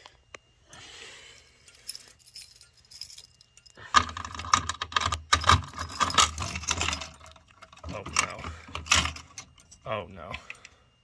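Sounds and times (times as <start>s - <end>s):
keys jangling: 1.6s - 9.8s.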